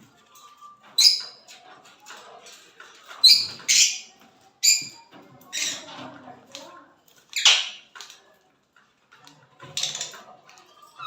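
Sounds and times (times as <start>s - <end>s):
parrots chirping: 0.9s - 1.4s, 3.1s - 5.8s
parrots screeching: 1.0s - 1.4s, 3.2s - 5.0s.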